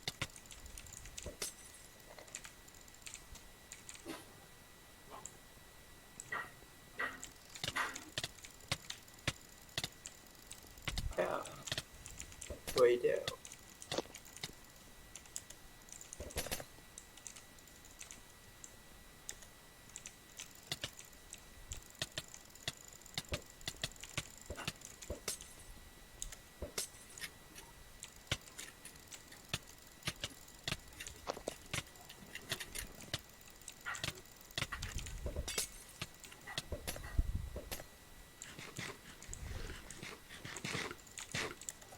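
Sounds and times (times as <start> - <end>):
faint high-pitched whine: 0.0 - 41.9
sharp clicks and taps: 6.2 - 14.6.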